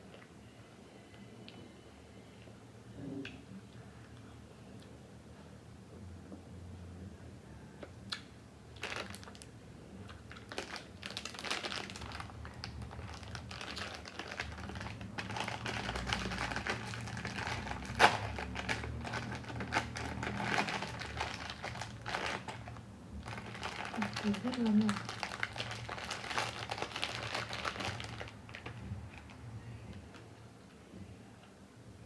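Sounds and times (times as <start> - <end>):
crisp eating crackles: 8.1 - 30.4.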